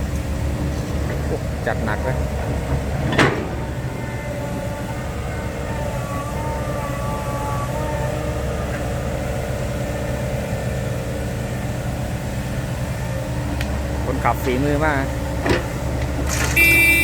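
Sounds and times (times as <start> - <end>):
diesel truck engine droning: 0.0 - 17.0.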